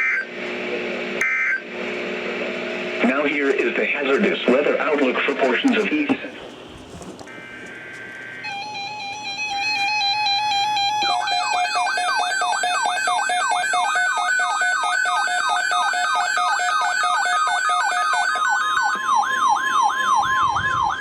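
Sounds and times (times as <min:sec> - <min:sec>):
steady alarm tone: 0:00.0 - 0:00.4, 0:01.2 - 0:06.7, 0:07.3 - 0:21.0
shrill downward sweeping alert tone: 0:08.4 - 0:15.2.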